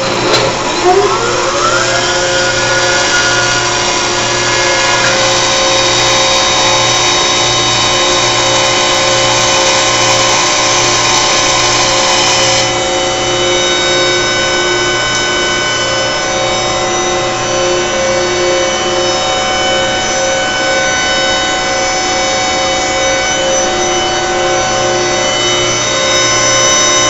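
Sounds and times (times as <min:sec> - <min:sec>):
rising whine: 0:00.0 - 0:10.3
compressor drone: 0:00.0 - 0:27.0.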